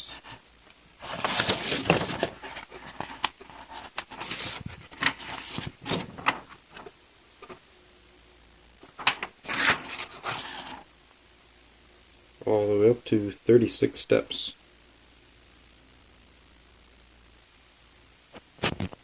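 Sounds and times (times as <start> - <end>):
paper pages turning: 1.0 - 7.6, 8.8 - 10.8.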